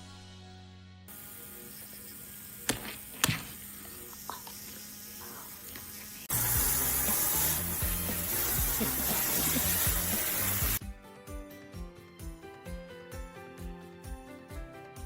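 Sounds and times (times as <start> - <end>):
loud even hiss: 4.8 - 10.8
background music with regular beat: 6.3 - 15.0.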